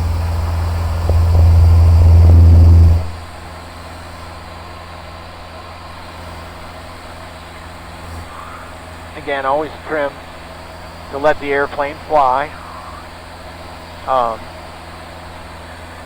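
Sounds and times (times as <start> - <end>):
aircraft engine and propeller drone: 0.0 - 16.0.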